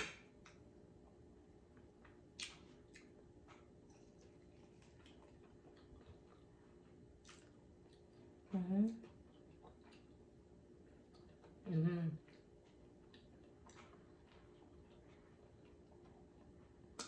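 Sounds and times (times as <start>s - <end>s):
chewing crunches and mouth clicks: 1.8s - 8.4s, 9.0s - 17.0s.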